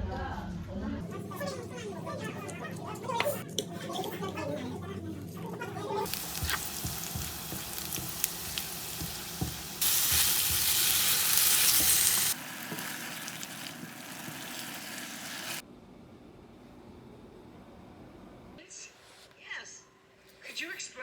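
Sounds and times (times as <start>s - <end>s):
food sizzling and frying: 6.0s - 15.6s.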